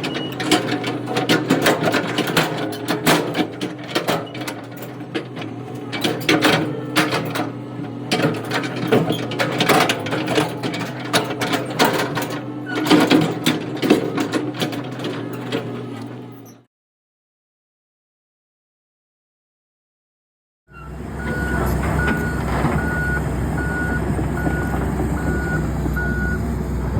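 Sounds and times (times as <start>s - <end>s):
clanks and rattles: 0.0s - 16.6s, 21.2s - 26.4s
machine engine humming: 20.7s - 26.9s.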